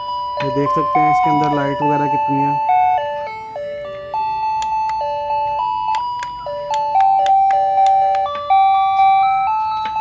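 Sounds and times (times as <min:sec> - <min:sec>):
toy music chip beeping tune: 0:00.0 - 0:10.0.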